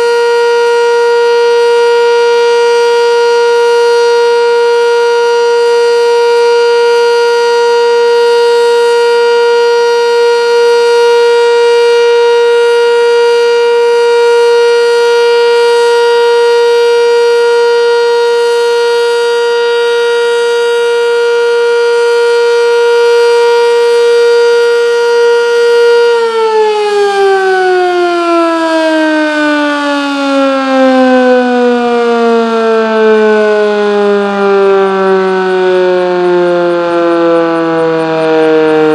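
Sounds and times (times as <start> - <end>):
warning siren winding down: 0.0 - 38.9.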